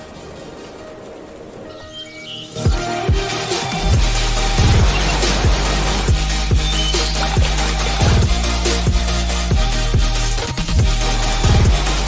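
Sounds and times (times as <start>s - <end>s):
quiet sustained music: 0.0s - 12.0s
heavy beat with bass drum kicks: 2.6s - 12.0s.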